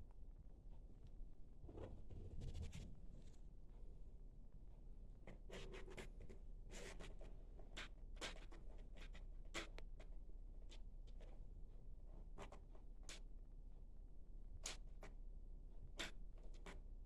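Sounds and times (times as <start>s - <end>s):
faint scratching and rustling: 1.6s - 3.5s, 5.3s - 11.4s.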